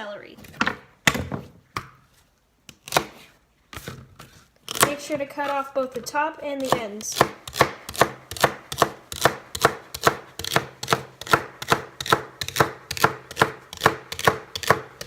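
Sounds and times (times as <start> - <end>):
knife chopping on cutting board: 4.7 - 15.0.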